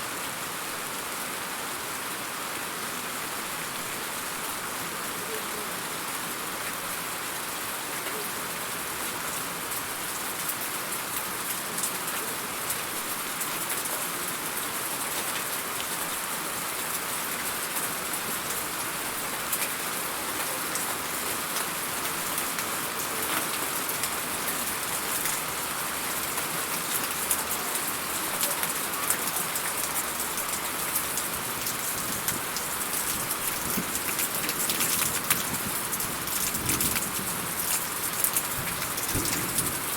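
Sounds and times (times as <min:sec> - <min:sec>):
steady rain falling: 0:00.0 - 0:39.9
sharp raindrop hits: 0:38.2 - 0:39.9.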